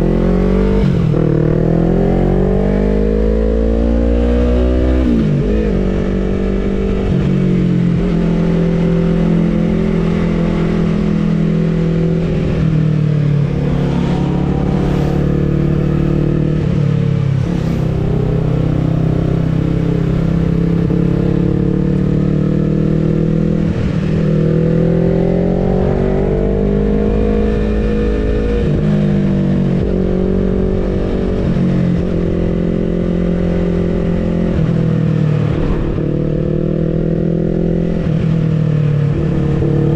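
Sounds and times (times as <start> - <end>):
vehicle engine revving: 8.0 - 32.5, 33.3 - 38.6.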